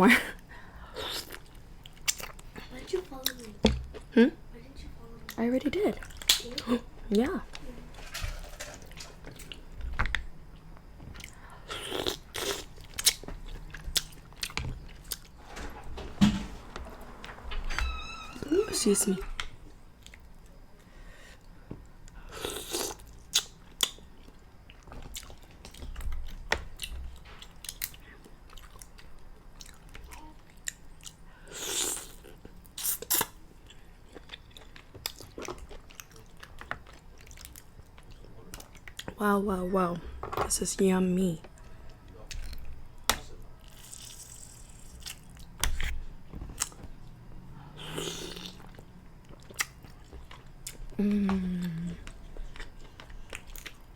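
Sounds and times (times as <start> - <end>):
wet chewing and lip-smacking: 32.4 - 39.2, 48.3 - 51.0
person biting and chewing: 43.7 - 46.8, 47.8 - 49.8.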